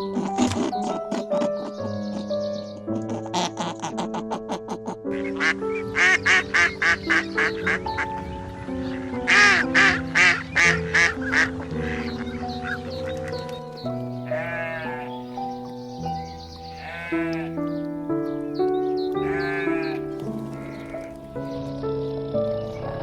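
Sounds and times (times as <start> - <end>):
background music: 0.0 - 23.0
duck quacking: 3.0 - 8.1, 9.0 - 13.5, 14.2 - 15.2, 19.2 - 21.2
quavering bleat: 14.2 - 15.3, 16.7 - 17.7, 19.2 - 21.1.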